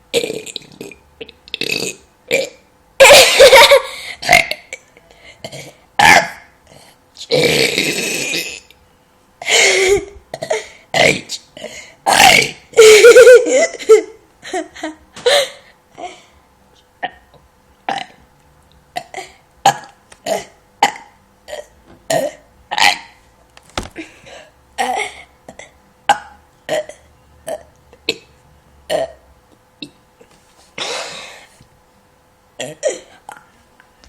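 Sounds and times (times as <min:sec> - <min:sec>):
person burping: 0:00.1 - 0:02.6, 0:07.3 - 0:08.7, 0:12.1 - 0:12.9, 0:17.9 - 0:18.2, 0:19.0 - 0:23.2, 0:24.8 - 0:28.3, 0:28.9 - 0:29.2, 0:32.6 - 0:33.4.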